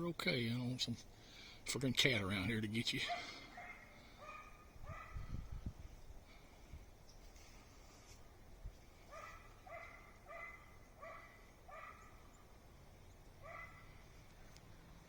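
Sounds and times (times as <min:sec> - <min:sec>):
faint dog barking: 0:03.0 - 0:05.5, 0:09.0 - 0:12.2, 0:13.4 - 0:14.0.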